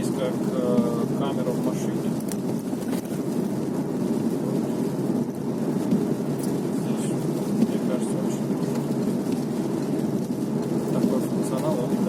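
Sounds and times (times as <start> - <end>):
rain on car: 0.0 - 12.0
tyre noise on wet road: 0.0 - 12.0.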